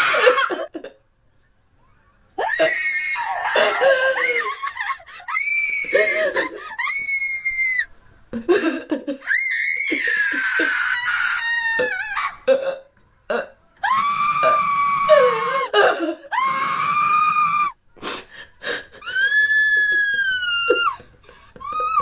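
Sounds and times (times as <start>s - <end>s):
woman screaming: 9.2s - 12.3s, 13.8s - 15.7s, 19.0s - 21.0s.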